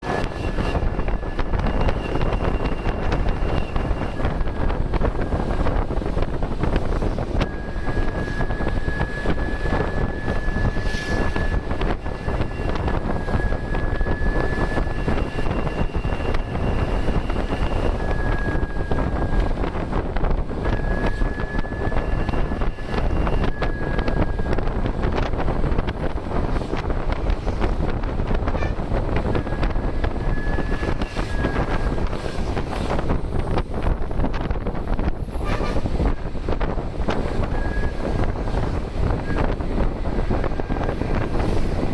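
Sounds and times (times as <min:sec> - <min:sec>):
diesel bus engine under load: 0:00.0 - 0:41.9
turbocharger whistle: 0:00.1 - 0:05.8, 0:06.6 - 0:25.3, 0:28.5 - 0:33.5, 0:37.3 - 0:39.6.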